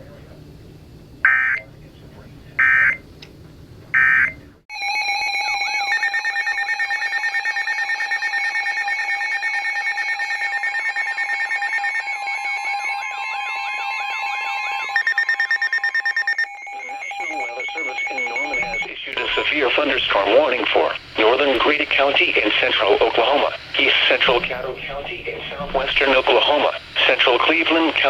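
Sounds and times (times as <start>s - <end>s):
steady alarm tone: 1.2s - 1.7s, 2.6s - 3.0s, 4.0s - 28.0s
beeping and warbling alarm tones: 2.6s - 3.0s, 4.0s - 28.0s
digital alert data burst: 5.7s - 28.0s.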